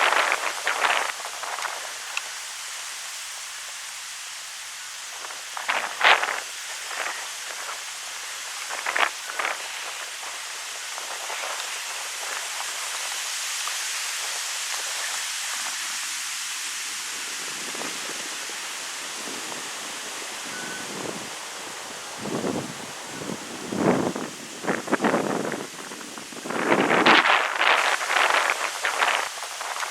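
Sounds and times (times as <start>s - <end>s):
wind gusts hitting microphone: 0.0s - 2.2s, 16.7s - 29.9s
wind rustling leaves: 0.0s - 29.9s.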